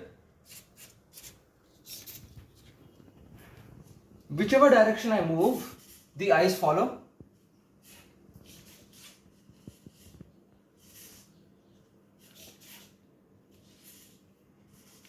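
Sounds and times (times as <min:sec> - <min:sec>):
soft hissy rustles: 0:01.8 - 0:11.5.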